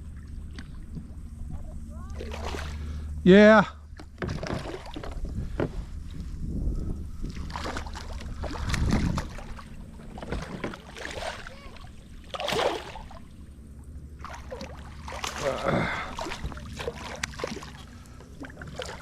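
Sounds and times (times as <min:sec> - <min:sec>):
water noise: 0:00.0 - 0:19.0
heavy bumps: 0:00.9 - 0:11.6
gear knocking against kayak hull: 0:03.9 - 0:11.5.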